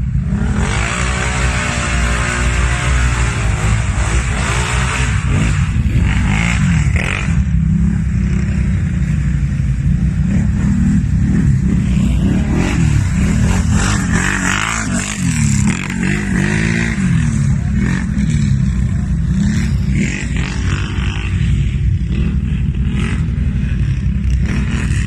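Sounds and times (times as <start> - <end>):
off-road vehicle engines revving: 0.0 - 25.0.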